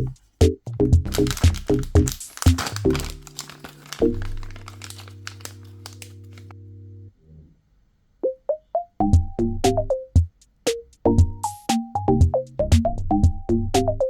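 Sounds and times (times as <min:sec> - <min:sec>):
packaging crinkling: 0:01.1 - 0:06.5.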